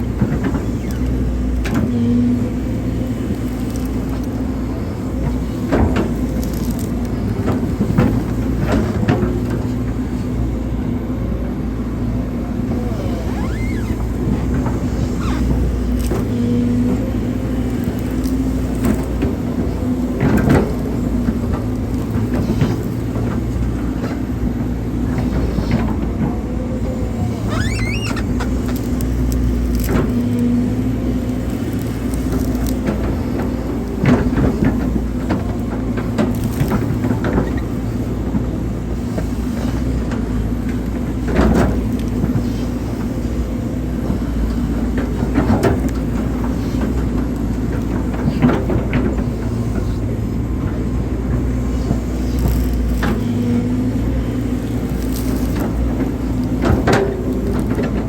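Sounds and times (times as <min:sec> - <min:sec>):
excavator diesel engine running: 0:00.0 - 0:58.0.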